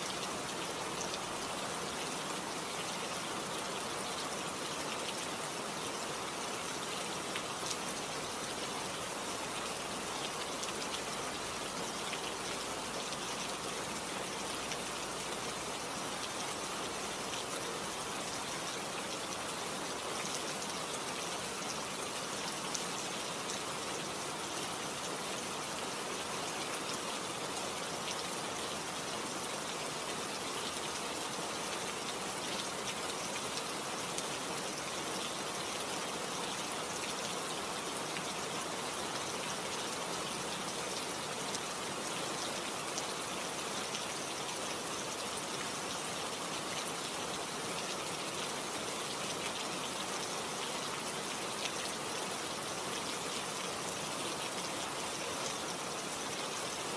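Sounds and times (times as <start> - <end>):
steady rain falling: 0.0 - 56.9.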